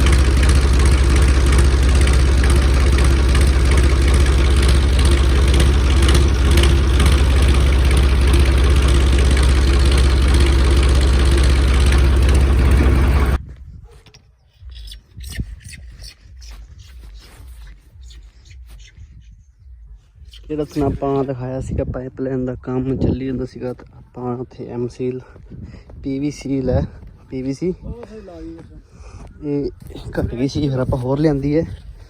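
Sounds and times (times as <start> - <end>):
diesel engine idling: 0.0 - 13.4.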